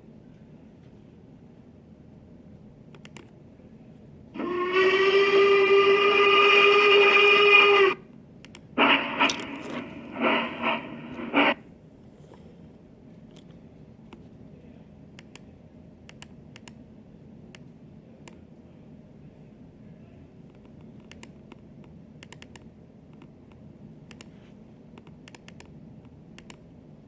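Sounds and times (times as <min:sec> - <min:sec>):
rough noisy pulses: 0:04.4 - 0:08.0, 0:08.8 - 0:11.6
steady horn-like tone: 0:04.4 - 0:08.0, 0:08.8 - 0:11.6.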